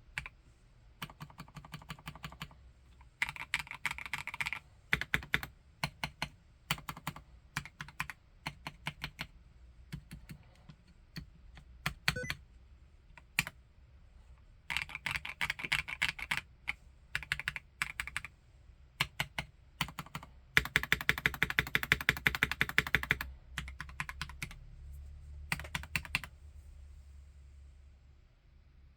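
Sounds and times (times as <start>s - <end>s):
mechanical keyboard typing: 1.0s - 2.6s, 3.2s - 9.3s, 11.2s - 12.4s, 13.2s - 13.6s, 14.7s - 16.5s, 17.2s - 18.3s, 19.0s - 24.6s, 25.5s - 26.3s.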